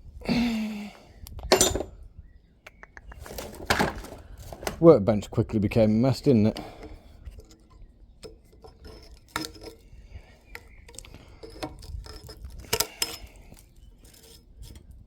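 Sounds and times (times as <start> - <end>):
metal tools clinking: 1.5 - 1.9, 11.3 - 13.4.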